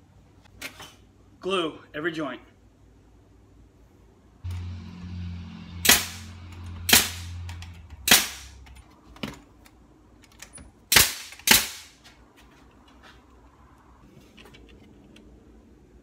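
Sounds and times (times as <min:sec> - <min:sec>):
low steady hum: 0:00.0 - 0:16.0
nails driven into wood: 0:06.9 - 0:08.7, 0:10.3 - 0:12.0.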